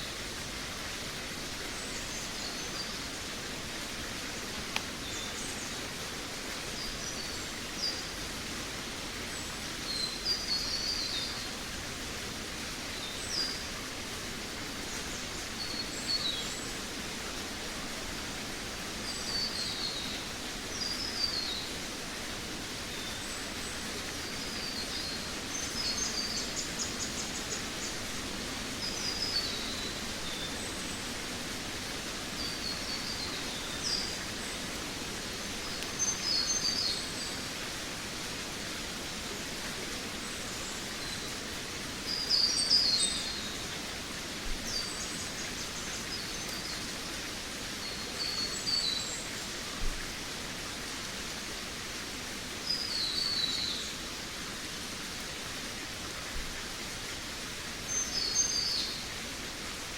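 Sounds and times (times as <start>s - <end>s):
steady background hiss: 0.0s - 59.9s.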